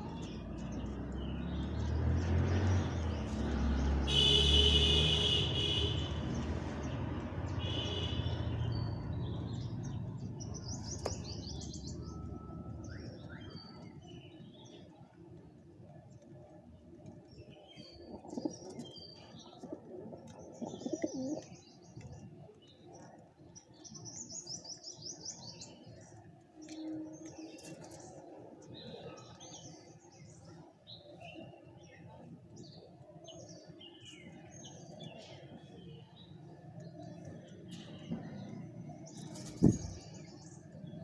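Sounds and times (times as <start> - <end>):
pigeons cooing: 18.0 - 21.6.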